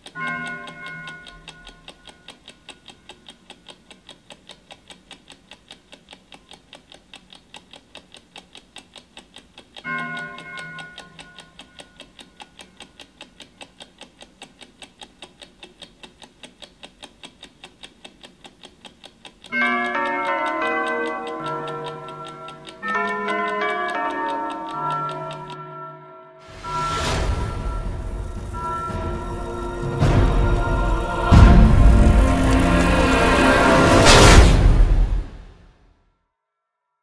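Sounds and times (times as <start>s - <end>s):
clock ticking fast: 0.0s - 25.8s, 26.4s - 35.2s
bell-like chime: 24.8s - 30.9s.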